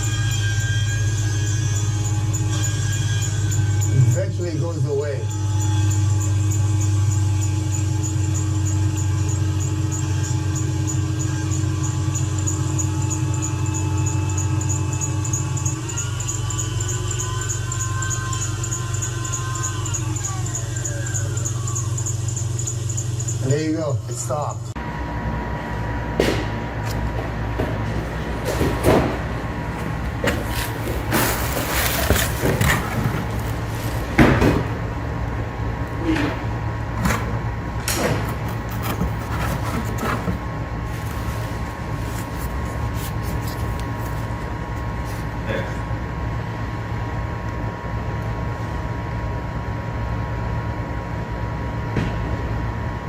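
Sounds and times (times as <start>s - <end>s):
air pump droning hum: 0.0s - 53.0s
scrapes and knocks: 27.6s - 34.7s.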